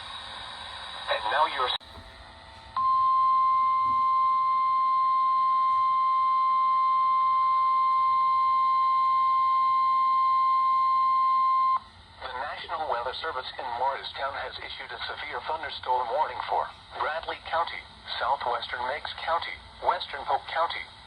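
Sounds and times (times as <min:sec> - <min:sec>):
steady warning beep: 0:02.8 - 0:11.9.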